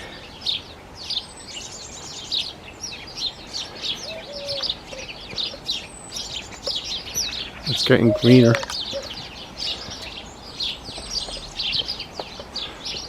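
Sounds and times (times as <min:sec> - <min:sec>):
house sparrows chirping: 0:00.0 - 0:13.0
low bird note: 0:07.4 - 0:09.8.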